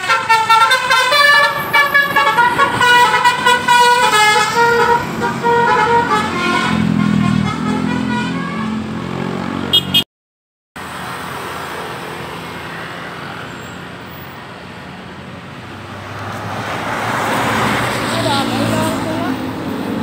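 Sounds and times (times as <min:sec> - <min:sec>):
roadside traffic noise: 0:00.0 - 0:10.1, 0:10.8 - 0:20.0
vehicle approaching: 0:01.1 - 0:10.0, 0:10.8 - 0:20.0.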